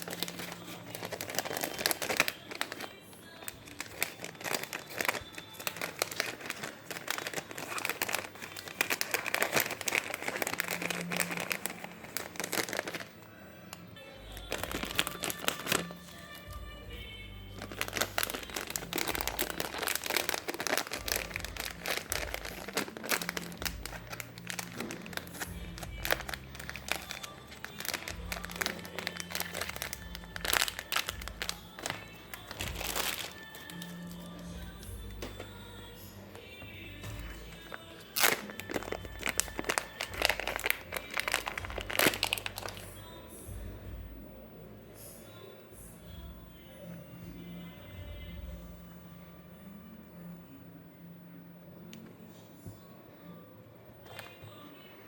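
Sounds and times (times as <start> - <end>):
plastic packaging crinkling: 0.0 - 43.2, 54.0 - 54.7
background music: 0.0 - 55.0.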